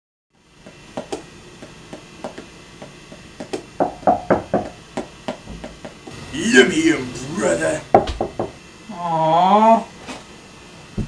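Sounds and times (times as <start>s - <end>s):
irregular knocks and taps: 0.6s - 6.1s, 8.0s - 8.6s.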